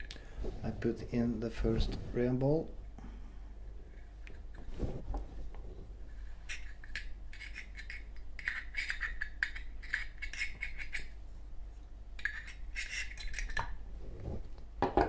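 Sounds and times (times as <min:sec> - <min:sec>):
scratchy rubbing: 0:12.2 - 0:14.4.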